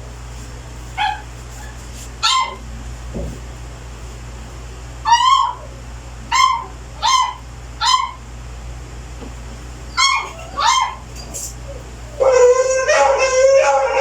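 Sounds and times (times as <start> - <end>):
dog yipping: 1.0 - 2.6, 5.0 - 5.7, 6.3 - 8.2, 9.9 - 14.0.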